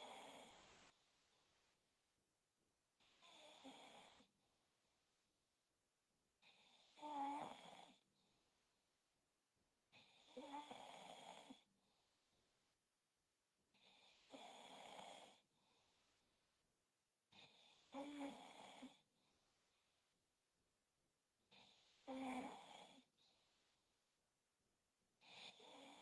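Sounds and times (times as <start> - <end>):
man snoring faintly: 0.0 - 0.8, 3.0 - 4.3, 6.4 - 8.0, 9.9 - 11.7, 13.8 - 15.4, 17.3 - 19.0, 21.5 - 23.1, 25.2 - 26.0.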